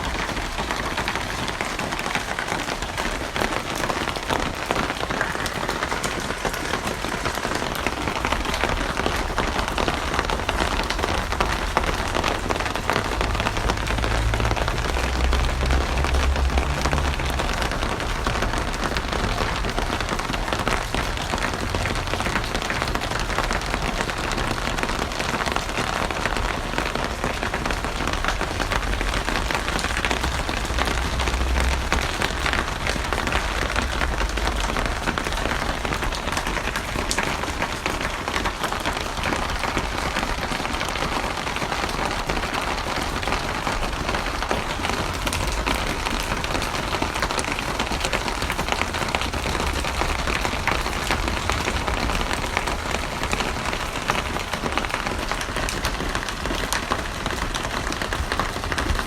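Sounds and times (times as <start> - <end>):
heavy rain on a surface: 0.0 - 59.0.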